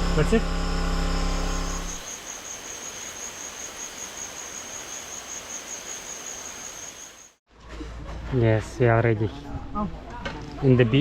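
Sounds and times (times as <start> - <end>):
low hum: 0.0 - 2.0
insects trilling: 1.8 - 7.4.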